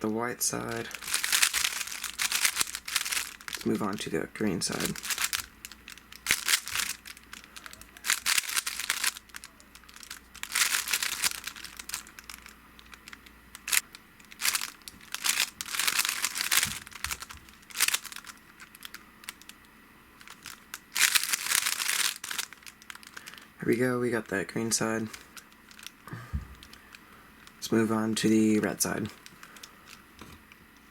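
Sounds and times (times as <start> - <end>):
puzzle cube plastic clicking: 4.7 - 19.6.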